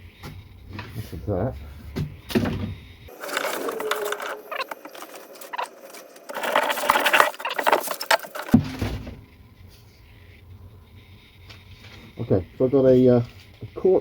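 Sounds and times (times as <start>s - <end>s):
scratchy clicking and rattling: 3.1s - 8.6s.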